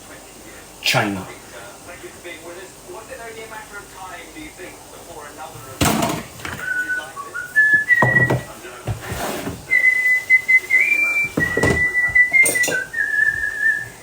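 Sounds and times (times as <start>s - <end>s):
kitchen utensils knocking: 5.8s - 6.7s, 7.7s - 8.5s, 11.2s - 13.5s
person whistling a tune: 6.6s - 8.5s, 9.7s - 14.0s.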